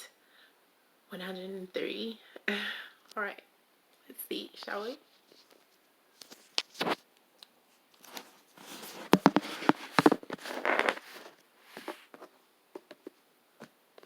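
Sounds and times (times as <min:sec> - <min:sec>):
cards shuffling: 0:08.0 - 0:12.2.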